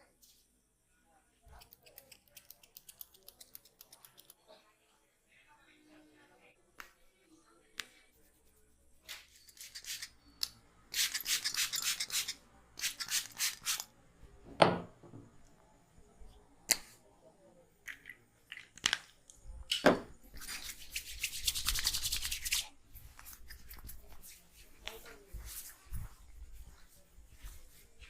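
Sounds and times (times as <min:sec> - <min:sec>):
hands rubbing through hair: 0:20.3 - 0:28.0.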